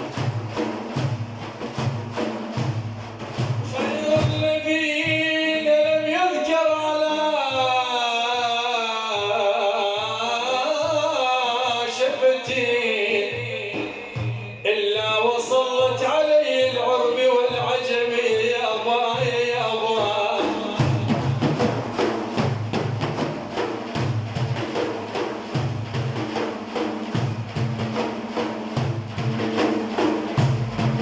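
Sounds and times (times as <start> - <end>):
steady drumbeat: 0.0 - 31.0
man singing melismatic line: 3.7 - 21.1.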